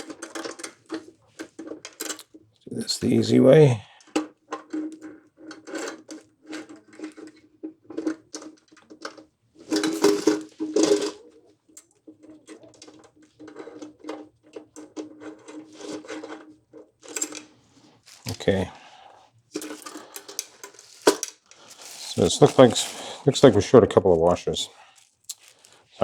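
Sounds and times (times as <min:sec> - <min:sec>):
metal tools clattering: 0:00.0 - 0:02.3, 0:04.5 - 0:11.4, 0:12.1 - 0:18.7, 0:19.5 - 0:23.6
rustling clatter: 0:00.0 - 0:02.5, 0:04.0 - 0:18.9, 0:19.5 - 0:23.7, 0:24.4 - 0:26.0.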